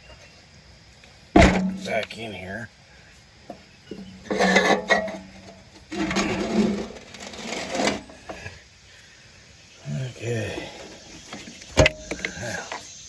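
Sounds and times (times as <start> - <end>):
heavy battery scraping and knocking: 3.9 - 8.4.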